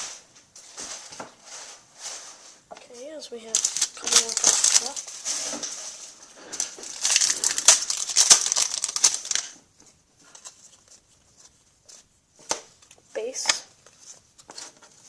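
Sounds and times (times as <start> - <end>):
foil wrapper crinkling and tearing: 3.5 - 9.6
cards clicking: 6.8 - 9.5.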